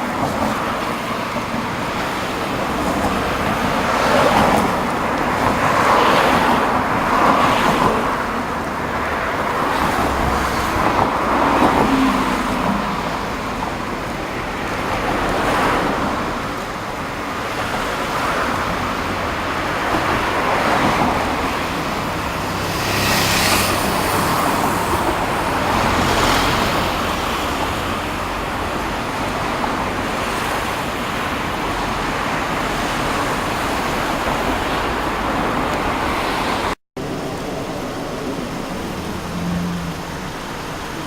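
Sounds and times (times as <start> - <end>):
surf breaking on beach: 0.0 - 41.0.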